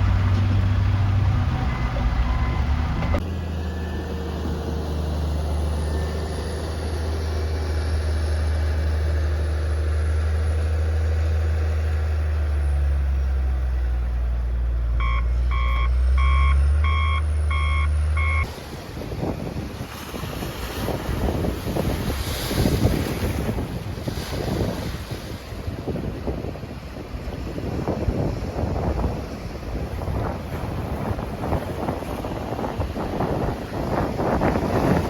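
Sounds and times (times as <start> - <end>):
heavy vehicle engine rumbling: 0.0 - 20.1
reversing alarm beeps: 1.6 - 4.1, 15.0 - 18.5.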